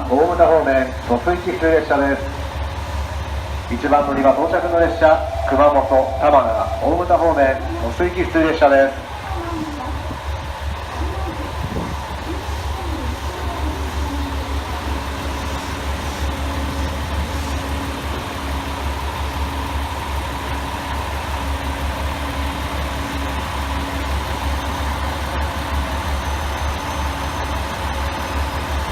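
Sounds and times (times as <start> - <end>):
diesel engines idling: 0.0 - 28.9
faint pulsing hum: 3.7 - 17.5.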